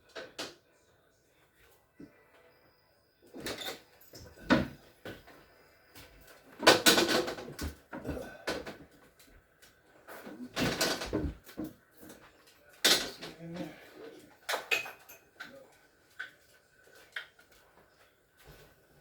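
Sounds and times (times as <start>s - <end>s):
knocking and scraping of parts: 6.6s - 8.9s, 10.1s - 13.8s.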